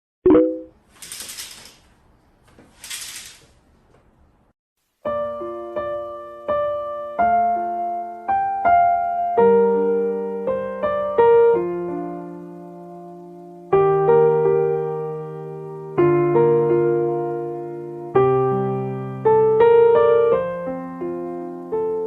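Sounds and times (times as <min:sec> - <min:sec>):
slow piano music: 0:05.0 - 0:22.0.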